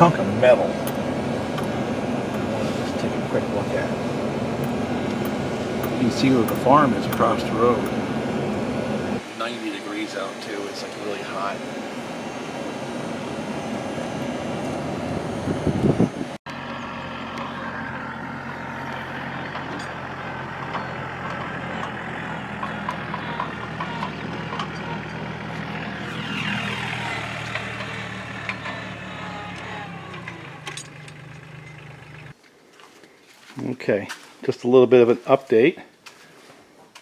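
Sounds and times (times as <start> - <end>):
engine running with whine: 0.0 - 32.4
rough noise: 15.9 - 32.4.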